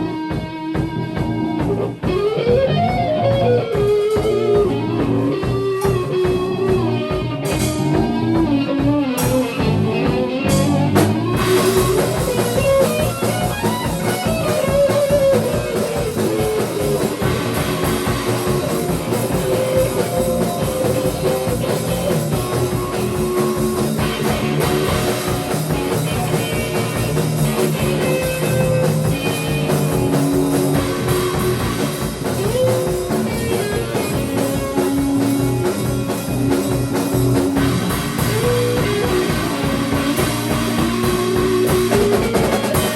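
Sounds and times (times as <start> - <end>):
bass guitar: 0.0 - 42.9
drum kit steady beat: 0.0 - 42.9
electric guitar playing melodic lines: 0.0 - 42.9
cymbals playing: 11.4 - 42.9.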